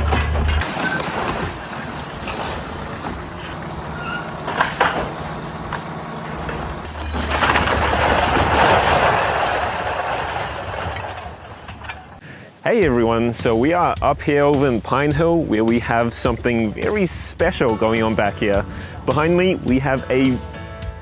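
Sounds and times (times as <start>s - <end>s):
excavator engine running: 0.0s - 12.2s
material crunching and rumbling: 0.0s - 12.2s.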